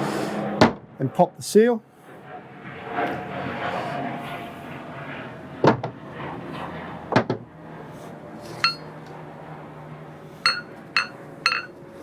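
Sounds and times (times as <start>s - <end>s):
metal knocks and clinks: 8.6s - 8.9s, 10.5s - 11.8s.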